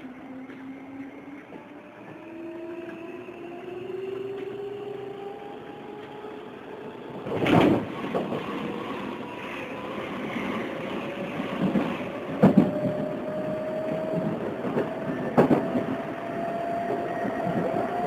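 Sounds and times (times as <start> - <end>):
wheels clacking over rail joints: 13.8 - 16.2.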